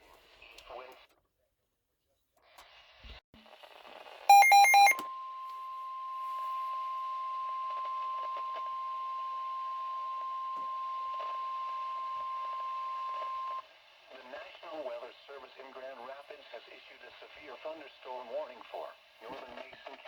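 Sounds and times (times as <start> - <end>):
digital data tone bursts: 4.3 - 5.0
steady warning alarm tone: 4.3 - 5.0
radio hiss: 14.0 - 20.0.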